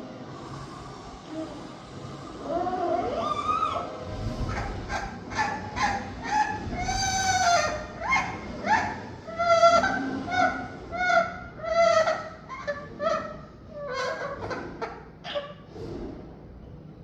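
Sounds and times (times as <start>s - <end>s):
parrot calling: 3.0s - 15.6s.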